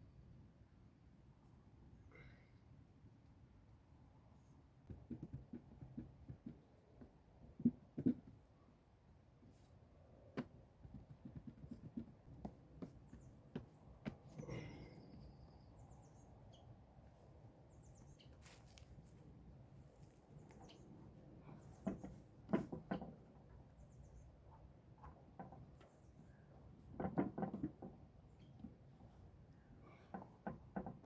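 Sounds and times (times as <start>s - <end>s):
small birds chirping: 12.8s - 19.2s, 19.9s - 22.3s, 23.6s - 24.6s
knocks and clatter of handling: 21.8s - 23.3s, 26.8s - 28.0s.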